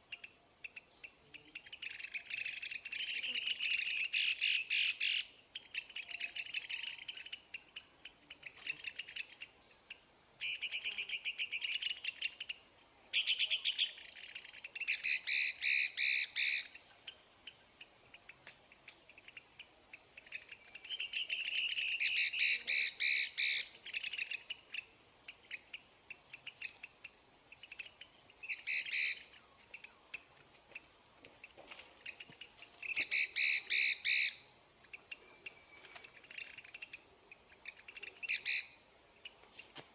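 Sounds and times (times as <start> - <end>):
faint insect drone: 0.0 - 39.9
songbird singing rapid notes: 32.1 - 39.7.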